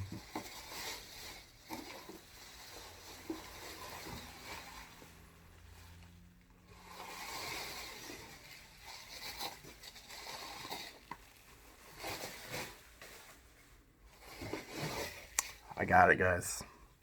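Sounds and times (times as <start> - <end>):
bubble wrap rustling: 0.0 - 16.0.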